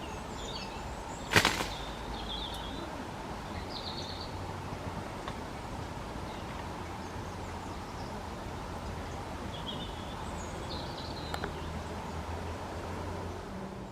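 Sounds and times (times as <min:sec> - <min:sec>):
small birds chirping: 0:00.0 - 0:13.9.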